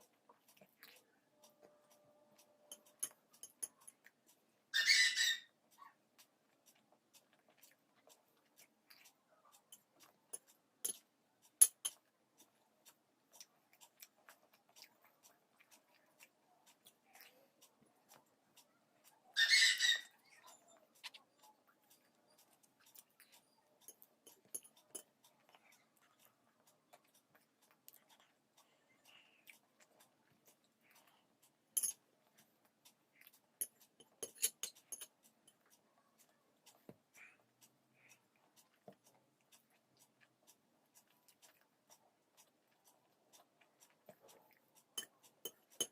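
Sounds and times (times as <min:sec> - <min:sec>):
person chewing food: 0:00.0 - 0:45.9
cutlery clicking and clinking on plate: 0:02.7 - 0:04.0, 0:11.6 - 0:12.1, 0:23.9 - 0:25.1, 0:31.8 - 0:32.0, 0:33.6 - 0:35.6, 0:45.0 - 0:45.9.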